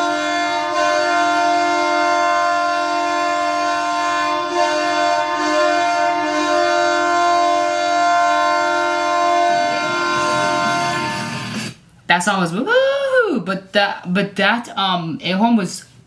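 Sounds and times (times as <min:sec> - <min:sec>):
goal horn blowing: 0:00.0 - 0:11.7.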